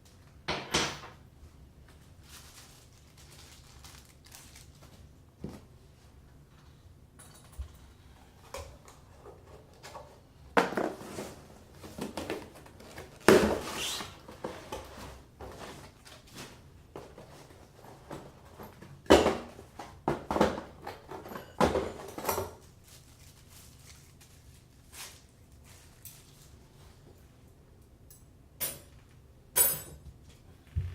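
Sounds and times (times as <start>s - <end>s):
packaging rustling and scraping: 2.0s - 5.1s, 10.7s - 18.9s, 21.9s - 26.9s.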